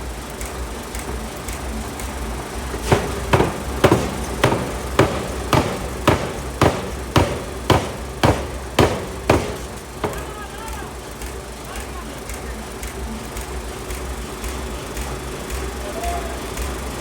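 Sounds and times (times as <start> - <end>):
forging hammer blows: 2.8 - 10.8.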